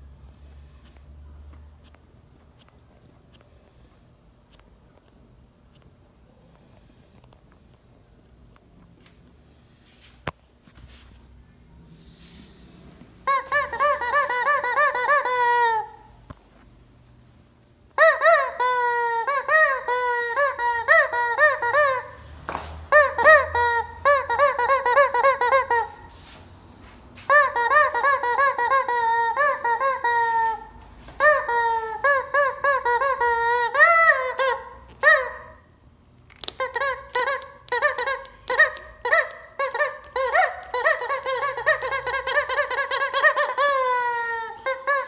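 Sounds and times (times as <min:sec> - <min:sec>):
rubber chicken toy squawking: 0:13.2 - 0:16.2, 0:18.0 - 0:26.4, 0:27.2 - 0:35.7, 0:36.4 - 0:45.0.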